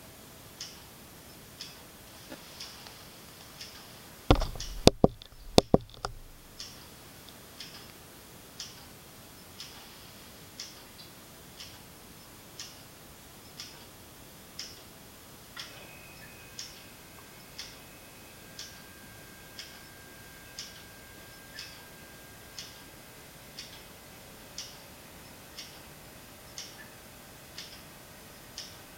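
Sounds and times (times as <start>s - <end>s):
faint steady whine: 0.0s - 28.9s
loud clicks and knocks: 4.3s - 6.6s
low thud: 4.3s - 6.6s.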